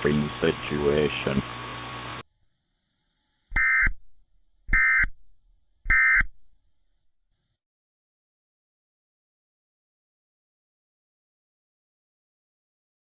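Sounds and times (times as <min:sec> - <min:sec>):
digital data tone bursts: 0:03.0 - 0:06.5.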